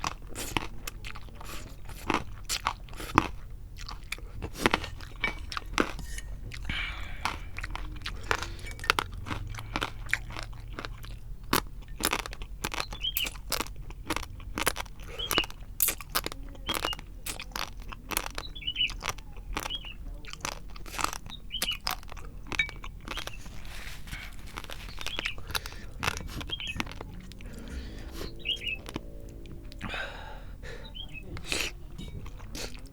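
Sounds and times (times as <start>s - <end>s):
person chewing noodles: 0.0s - 32.9s
wet mouth clicks and smacks: 14.6s - 17.5s.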